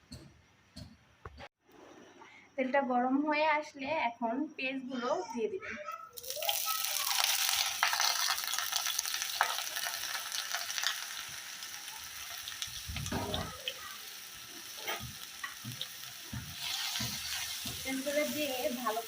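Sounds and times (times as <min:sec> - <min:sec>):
onions sizzling in hot oil: 0:06.2 - 0:19.0
dull stirring knocks: 0:14.9 - 0:18.0.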